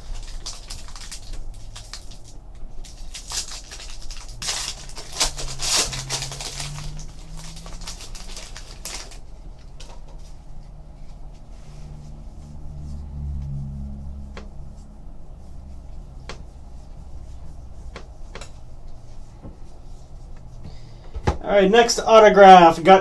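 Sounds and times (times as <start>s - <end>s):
trading cards clicking and rustling: 0.0s - 9.2s.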